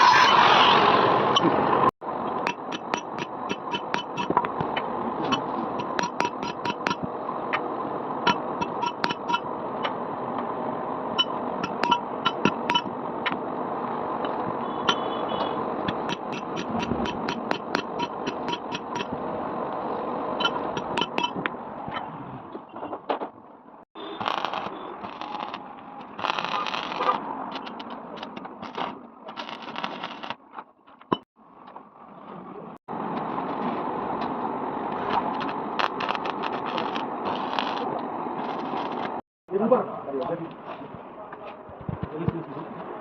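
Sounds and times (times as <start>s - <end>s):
metal crackling and scraping: 2.4s - 7.1s, 8.2s - 9.5s, 11.2s - 13.0s, 15.8s - 19.2s, 20.4s - 23.0s, 24.0s - 31.3s, 34.9s - 39.2s
sharp ticks and knocks: 2.4s - 7.1s, 8.3s - 10.0s, 11.2s - 13.4s, 15.8s - 19.2s, 20.4s - 21.5s, 24.2s - 31.3s, 35.1s - 37.8s.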